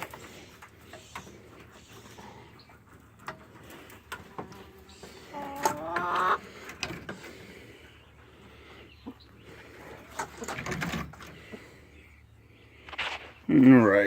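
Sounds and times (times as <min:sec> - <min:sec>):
chicken calling: 0:04.1 - 0:06.8.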